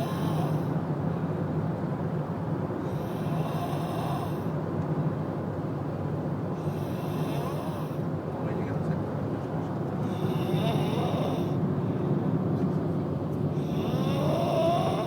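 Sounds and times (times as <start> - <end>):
person snoring: 0.0 - 0.7, 3.0 - 4.5, 6.6 - 8.0, 10.0 - 11.6, 13.6 - 15.0.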